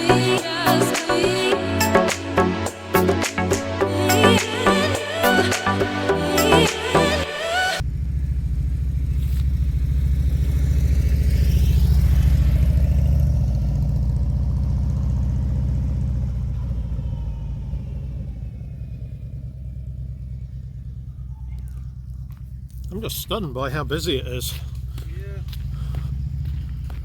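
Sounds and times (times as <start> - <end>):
car engine and road rumble: 6.5 - 27.0.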